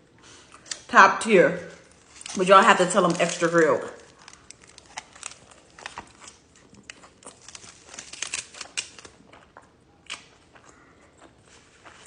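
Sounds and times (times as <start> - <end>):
person chewing food: 4.0 - 12.0.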